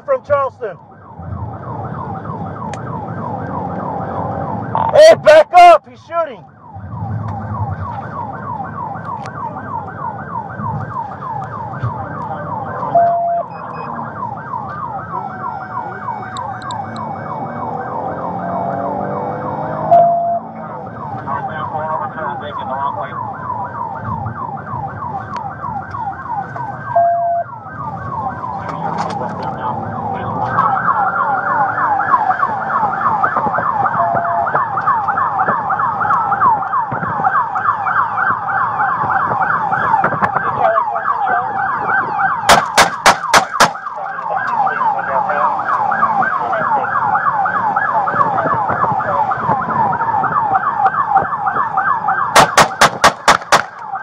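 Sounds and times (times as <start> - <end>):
police siren yelping: 0.0 - 54.0
siren wail: 0.0 - 54.0
sharp bangs: 42.5 - 43.9, 52.4 - 53.8.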